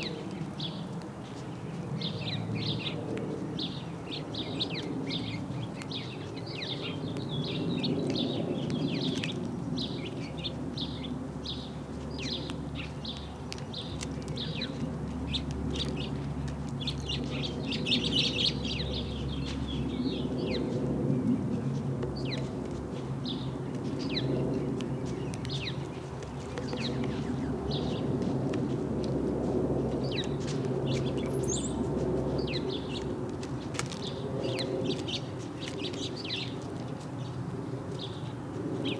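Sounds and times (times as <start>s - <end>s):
sparrows chirping: 0.0s - 38.9s.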